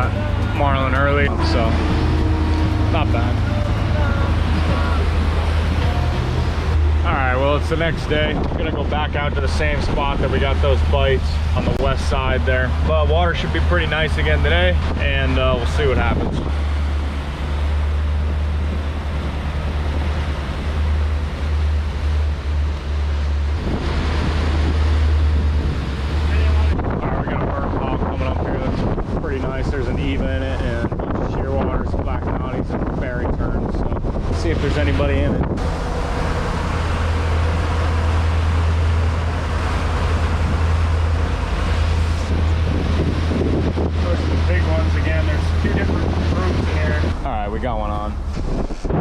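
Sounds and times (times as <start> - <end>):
boat engine drone: 0.0 - 49.0
wind and water noise: 0.0 - 49.0
wind and water hissing: 32.8 - 49.0.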